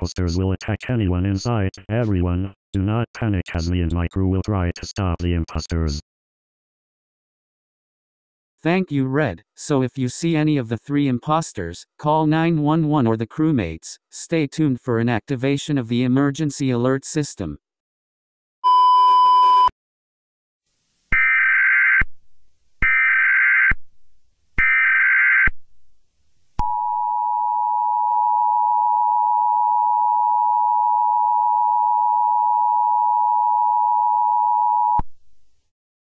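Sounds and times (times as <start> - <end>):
short beep: 18.6 - 19.7.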